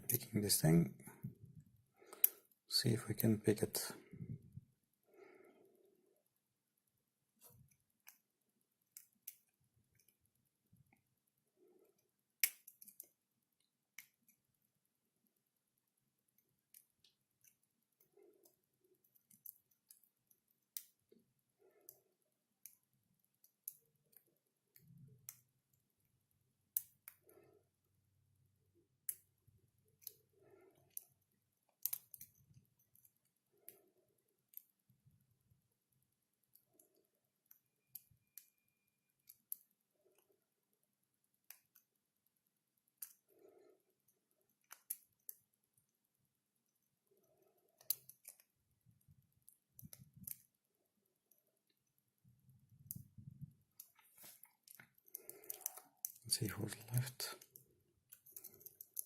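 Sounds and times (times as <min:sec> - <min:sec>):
lock pick clicking on pins: 0:30.9 - 0:33.7, 0:47.2 - 0:48.5, 0:54.6 - 0:56.3.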